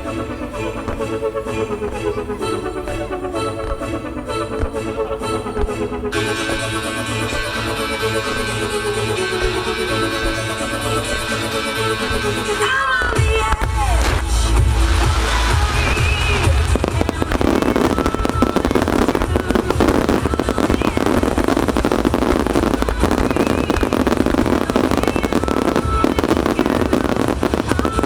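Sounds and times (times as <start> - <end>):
music through loudspeakers: 0.0 - 28.0
fireworks bursting and crackling: 5.6 - 28.0.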